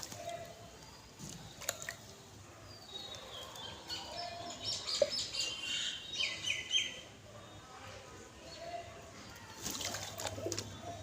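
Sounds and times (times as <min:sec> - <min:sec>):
small birds chirping: 0:00.0 - 0:07.6.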